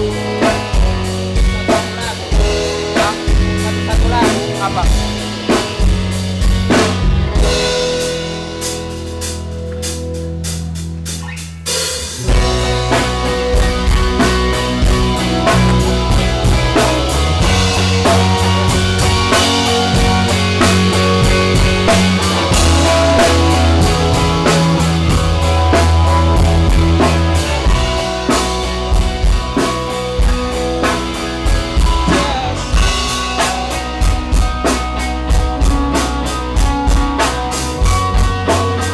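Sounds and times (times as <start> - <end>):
rock band playing: 0.0 - 38.9
drum hits: 12.0 - 35.9.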